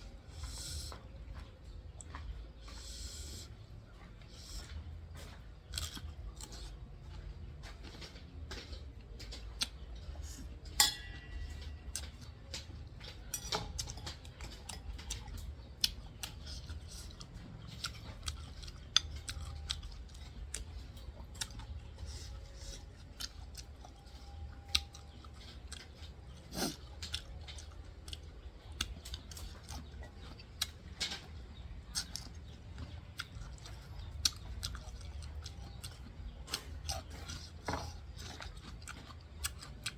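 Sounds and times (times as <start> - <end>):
chewing: 0.0 - 39.9
cutlery clinking on a plate: 10.7 - 14.9.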